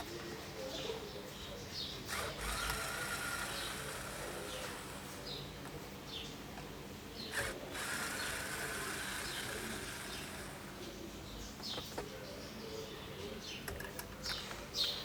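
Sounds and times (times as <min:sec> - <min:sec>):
birds chirping: 0:00.0 - 0:15.0
screwdriver turning screws: 0:02.1 - 0:05.2, 0:07.3 - 0:10.8.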